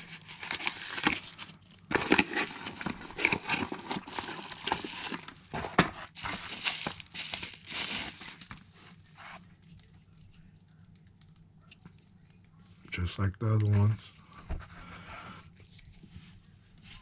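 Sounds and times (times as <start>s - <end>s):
plastic packaging crinkling: 0.0s - 12.0s.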